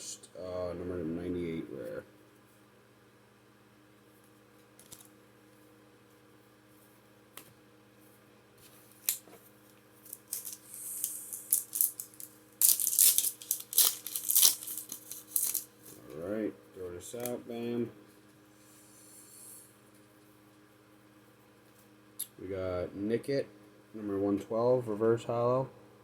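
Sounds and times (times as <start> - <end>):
foil wrapper crinkling and tearing: 8.9 - 9.3, 10.0 - 16.0.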